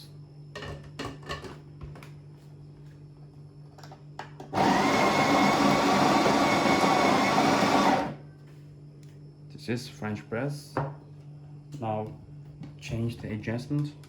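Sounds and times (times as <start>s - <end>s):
electric coffee grinder grinding: 4.5s - 8.2s.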